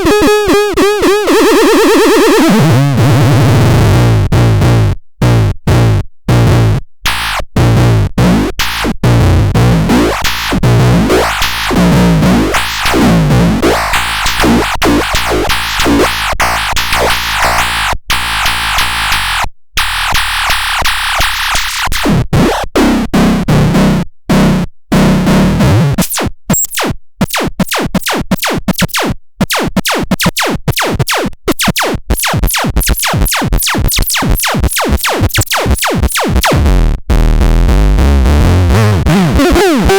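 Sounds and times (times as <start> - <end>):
stuttering electronic drum hits: 10.0 - 19.3, 29.5 - 36.7.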